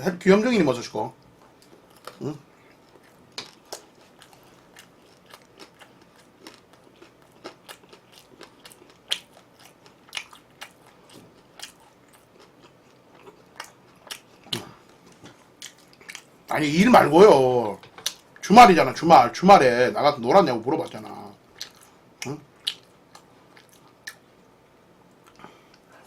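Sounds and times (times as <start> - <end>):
chewing crunchy food: 1.2 - 16.4, 20.9 - 24.5.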